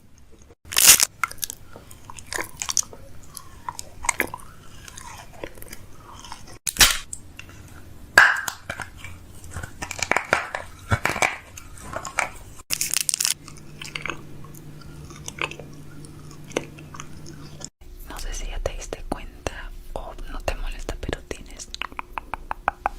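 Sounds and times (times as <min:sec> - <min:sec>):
person crunching fries: 0:00.7 - 0:07.0, 0:12.6 - 0:17.6.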